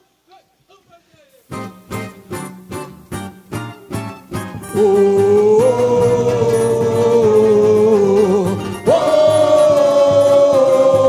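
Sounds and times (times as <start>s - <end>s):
samba band accompaniment: 1.2s - 11.0s
person singing long held notes: 4.7s - 11.0s.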